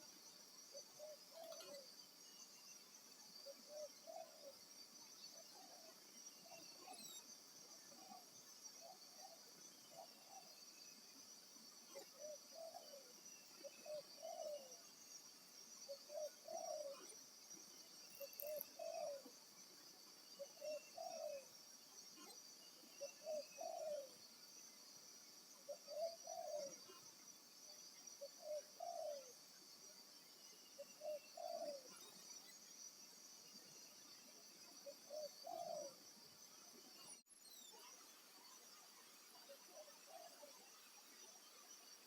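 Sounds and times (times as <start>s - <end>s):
dove cooing: 13.8s - 14.7s, 18.5s - 19.2s, 23.2s - 24.1s.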